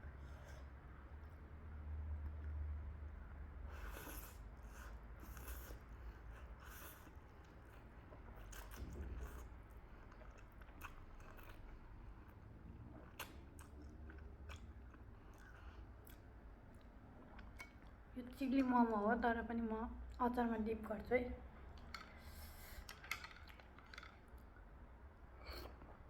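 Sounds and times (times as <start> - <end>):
person chewing: 8.3 - 18.0.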